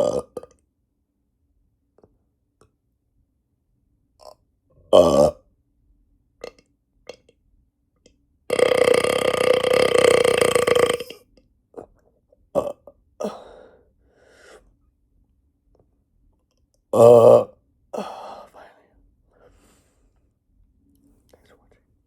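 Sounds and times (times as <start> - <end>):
long loud burp: 0.0 - 0.5, 4.2 - 5.4, 8.5 - 11.3, 12.6 - 12.9, 17.0 - 17.6.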